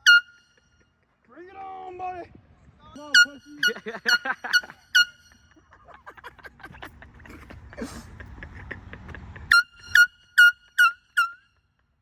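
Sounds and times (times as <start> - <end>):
air horn toots: 0.0 - 0.6, 3.0 - 5.5, 9.5 - 11.4.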